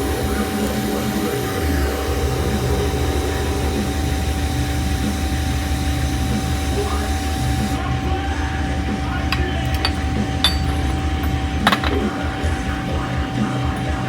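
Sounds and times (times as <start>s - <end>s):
welding arc hissing: 0.0s - 8.3s.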